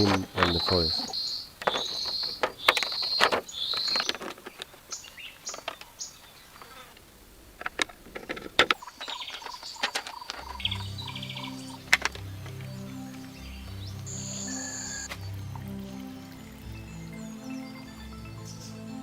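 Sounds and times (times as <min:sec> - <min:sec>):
high insect trill: 0:08.8 - 0:19.0
music with low notes: 0:10.4 - 0:19.0.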